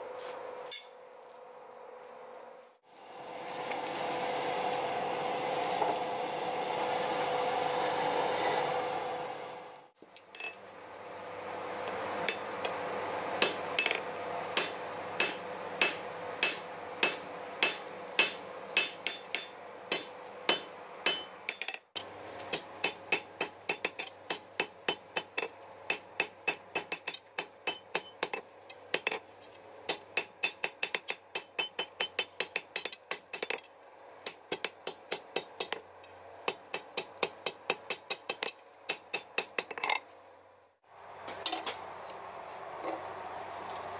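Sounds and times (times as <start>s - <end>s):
hammer striking steel on anvil: 0.7s - 1.0s, 13.4s - 21.8s, 22.4s - 29.2s, 29.9s - 33.6s, 34.3s - 35.8s, 36.5s - 40.0s.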